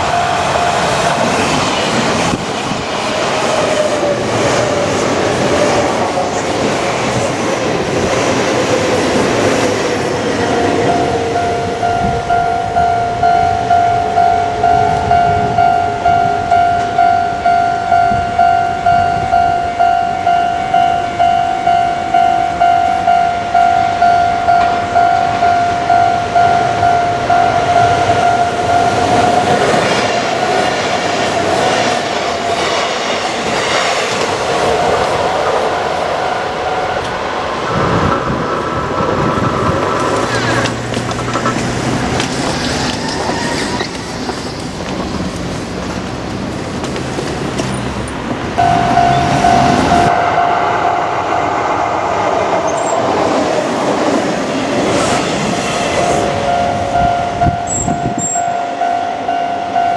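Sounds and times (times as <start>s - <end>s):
level crossing warning bell: 0.0s - 2.1s, 9.8s - 31.8s, 34.6s - 37.7s, 48.6s - 51.8s, 52.5s - 53.3s, 55.8s - 59.9s
train passing: 0.0s - 59.9s.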